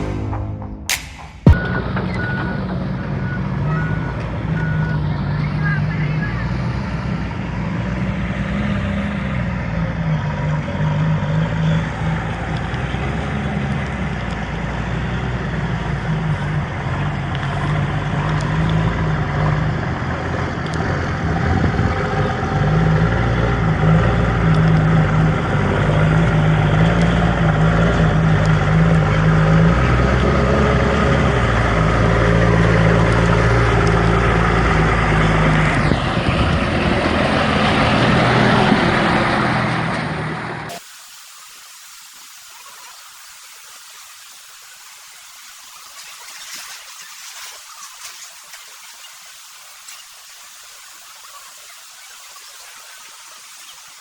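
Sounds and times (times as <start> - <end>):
heavy vehicle engine humming: 1.5 - 40.8.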